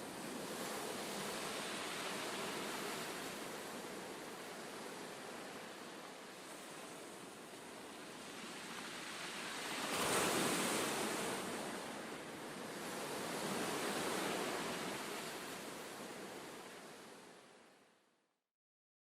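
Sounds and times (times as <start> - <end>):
ocean waves washing in: 0.0 - 17.7.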